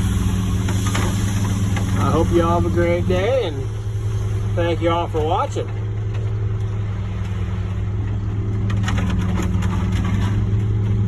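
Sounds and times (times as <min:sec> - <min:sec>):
heavy truck engine running: 0:00.0 - 0:11.0.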